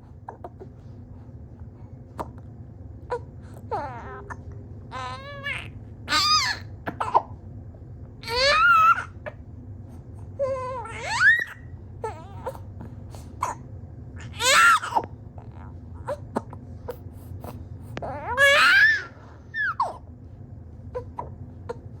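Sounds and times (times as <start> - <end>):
baby crying: 3.1 - 7.3, 8.2 - 9.3, 10.4 - 12.6, 14.2 - 16.5, 18.0 - 20.0.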